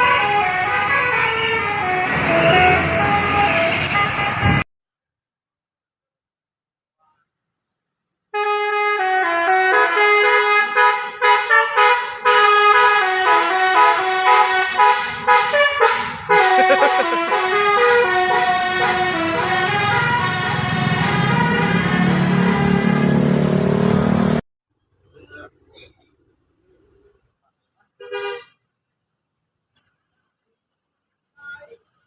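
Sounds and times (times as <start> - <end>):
musical air horn melody: 0.0 - 4.6, 8.4 - 23.5.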